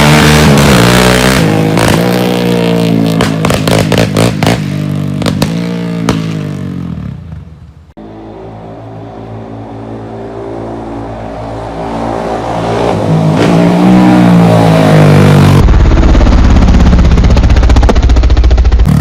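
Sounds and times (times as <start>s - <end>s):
quad engine: 0.0s - 19.0s
exhaust pops and crackles: 3.1s - 6.3s, 15.6s - 19.0s.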